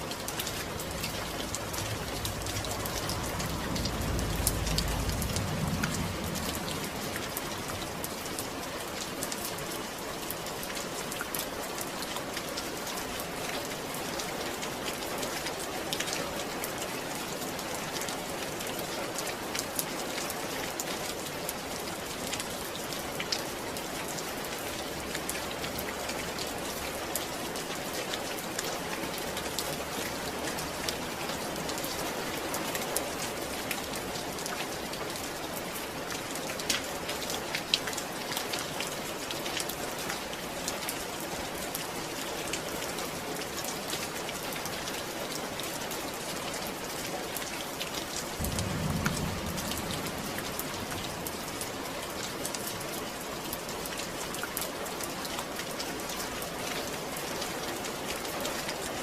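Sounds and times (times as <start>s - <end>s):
steady rain falling: 0.0s - 59.0s
low rumble: 0.4s - 8.1s.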